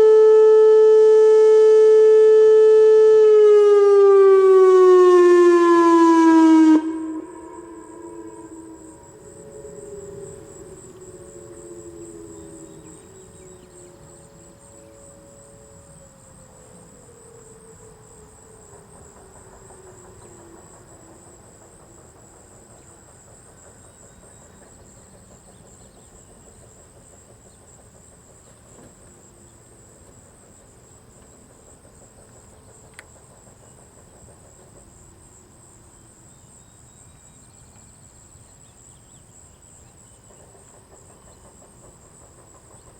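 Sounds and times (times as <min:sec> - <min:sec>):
electronic siren winding down: 0:00.0 - 0:20.3
insects chirring: 0:04.2 - 0:42.9.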